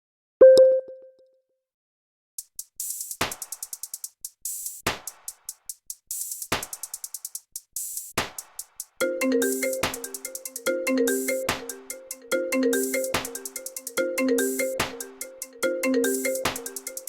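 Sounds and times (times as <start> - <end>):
hi-hat ticks: 2.4 - 9.0
drum machine beat: 2.4 - 17.0
kick and snare hits: 8.2 - 8.4.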